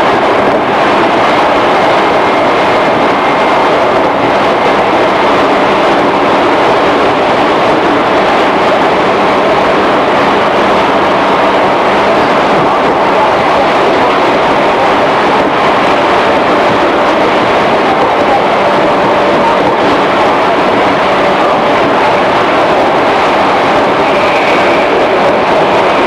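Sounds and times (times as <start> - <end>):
electric train running: 0.0 - 26.0.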